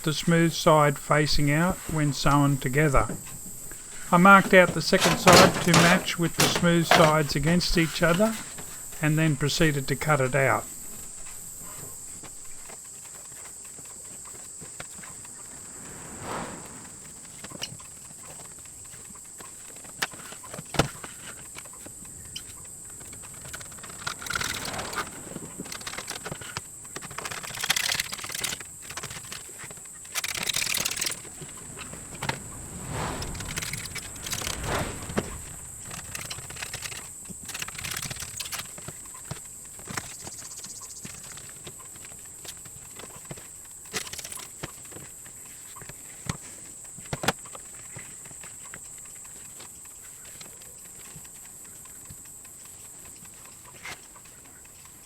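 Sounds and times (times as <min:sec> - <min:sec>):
steady high-pitched hiss: 0:00.0 - 0:55.0
sharp clicks: 0:23.2 - 0:39.3.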